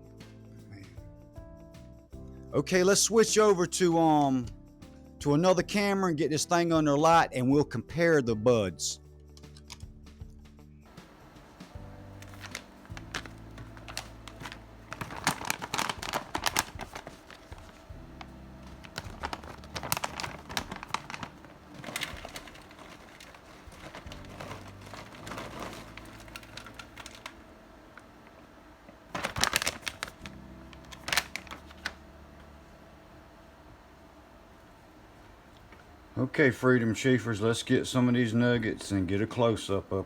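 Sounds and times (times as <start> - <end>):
bag crinkling: 12.0 - 28.4, 29.0 - 32.0.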